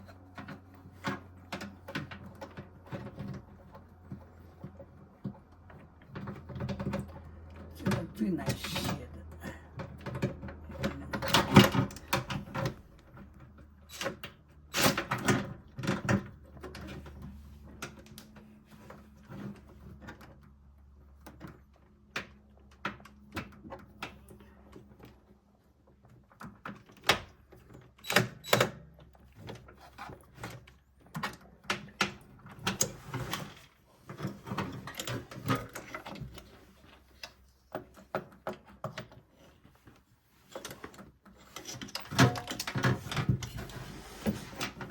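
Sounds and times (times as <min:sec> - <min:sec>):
tools knocking and rattling: 0:40.5 - 0:44.9.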